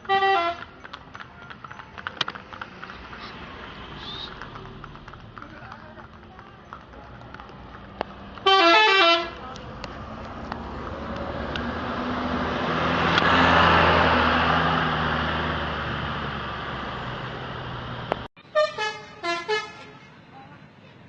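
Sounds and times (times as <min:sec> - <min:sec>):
bus horn playing musical notes: 0:00.0 - 0:00.7, 0:08.4 - 0:09.4, 0:18.4 - 0:20.1
large vehicle passing: 0:00.0 - 0:18.3.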